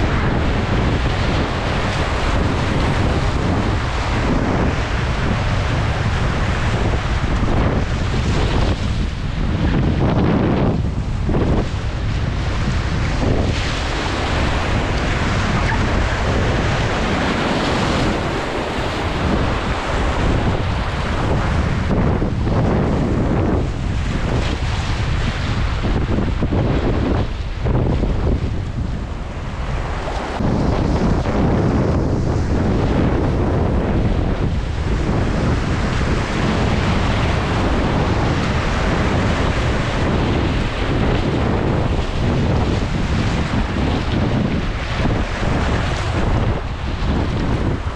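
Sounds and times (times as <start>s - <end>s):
whitewater roaring: 0.0s - 47.9s
wind buffeting microphone: 0.0s - 47.9s
river rapid rushing: 11.2s - 22.2s.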